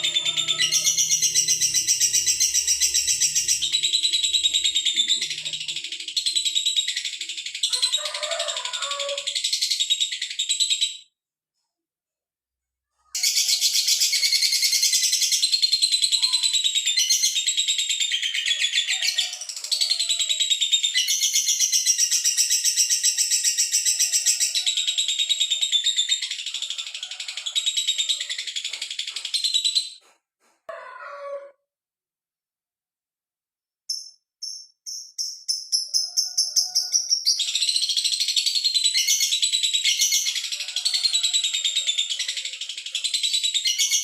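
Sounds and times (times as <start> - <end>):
lovebird chattering call: 0.0 - 7.3.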